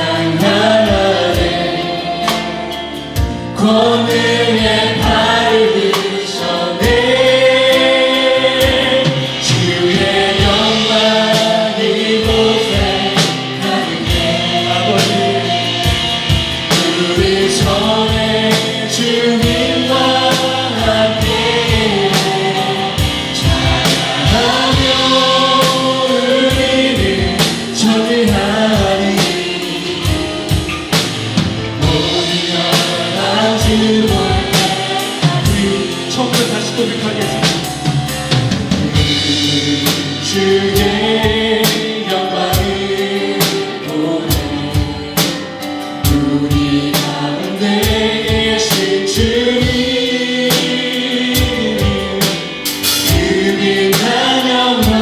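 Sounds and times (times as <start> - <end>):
band with drums: 0.0 - 55.0
congregation singing praise song: 0.0 - 55.0.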